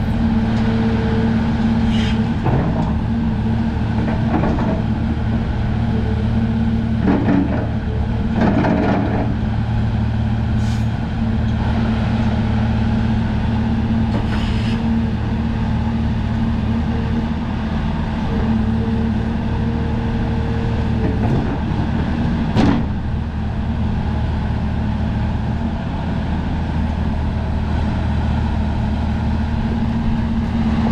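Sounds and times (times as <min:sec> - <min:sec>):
excavator diesel engine running: 0:00.0 - 0:30.9.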